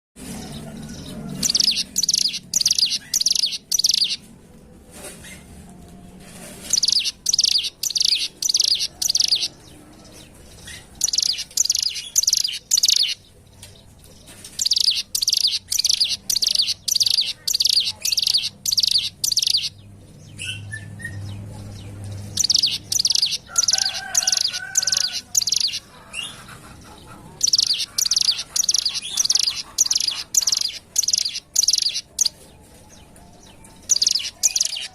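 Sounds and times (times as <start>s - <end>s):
bird chirping high notes: 1.4s - 4.2s, 6.7s - 9.5s, 11.0s - 13.2s, 14.6s - 19.8s, 22.4s - 25.8s, 33.8s - 34.9s.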